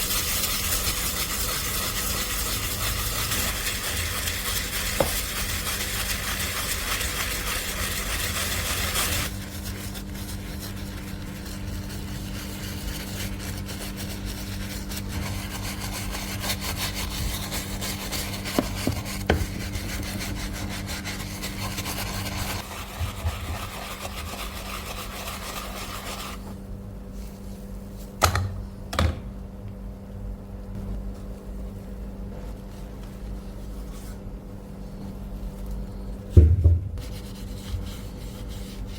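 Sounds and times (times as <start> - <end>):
hand scraping and rubbing workpiece: 0.0 - 26.6
steady low hum: 0.0 - 38.9.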